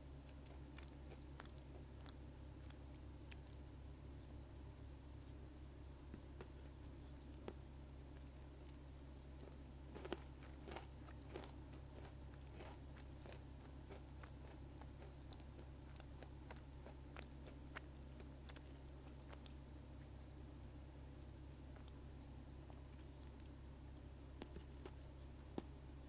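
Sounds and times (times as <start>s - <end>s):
steady low hum: 0.0s - 26.0s
chewing clicks: 0.2s - 3.6s, 9.4s - 20.8s, 21.7s - 26.0s
biscuit stick crunching: 9.4s - 17.8s.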